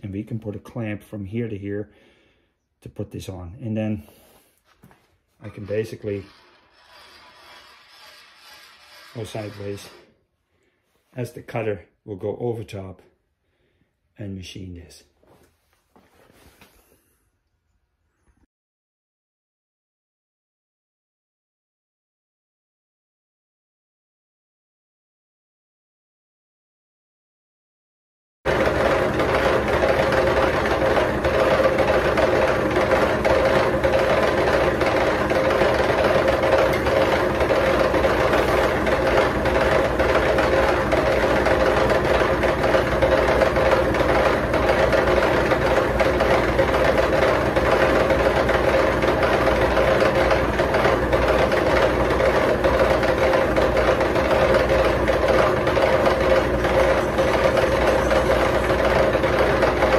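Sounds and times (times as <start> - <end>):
milling machine running: 5.5 - 10.1, 28.5 - 59.9.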